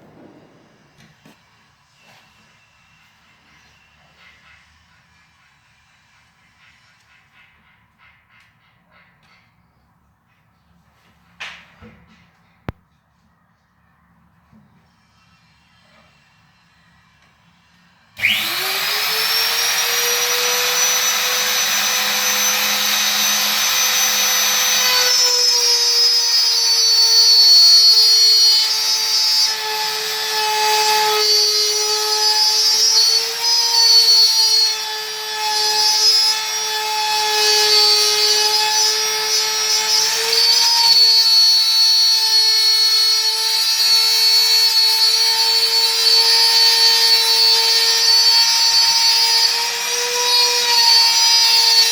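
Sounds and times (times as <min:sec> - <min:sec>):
orbital sander sanding: 0:18.2 - 0:26.0.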